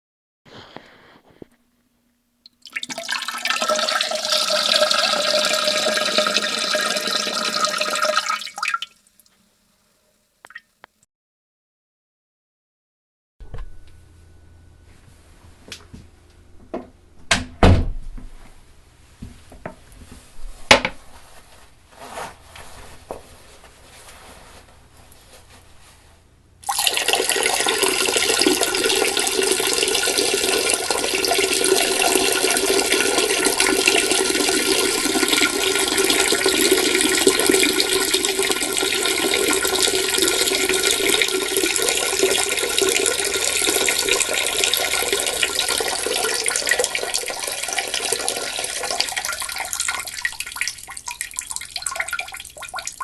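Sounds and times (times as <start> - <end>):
urine stream into a toilet: 2.5 - 10.9, 26.6 - 53.0.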